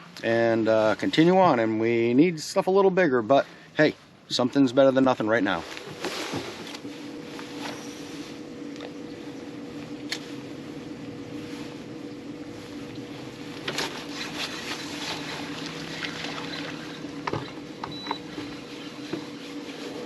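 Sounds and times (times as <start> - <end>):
electric motor humming: 5.8 - 20.0.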